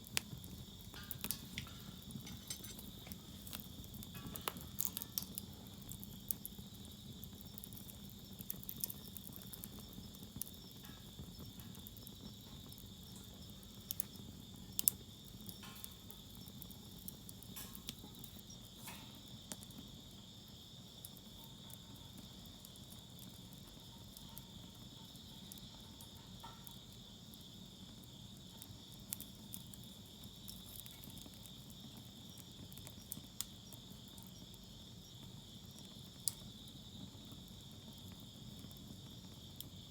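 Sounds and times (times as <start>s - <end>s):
fire pops and snaps: 0.0s - 19.9s, 28.2s - 34.4s, 35.2s - 36.7s
insect trill: 0.0s - 38.4s
wood fire crackling: 0.0s - 39.9s.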